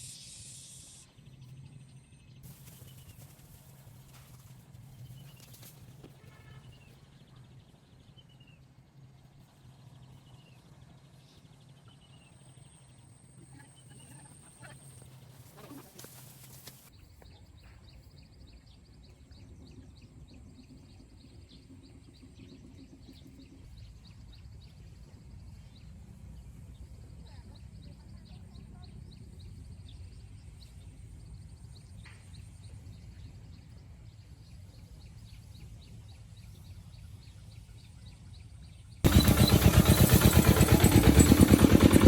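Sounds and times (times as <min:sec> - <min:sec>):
rapid ticking chatter: 0:39.1 - 0:42.0.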